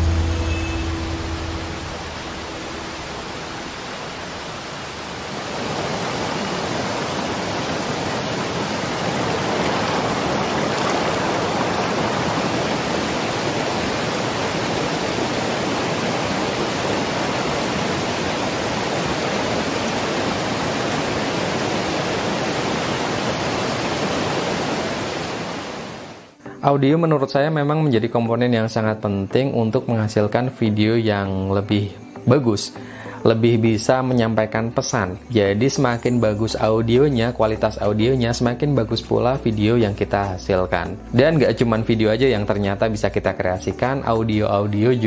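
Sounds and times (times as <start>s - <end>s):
stream water flowing: 0.0s - 26.4s.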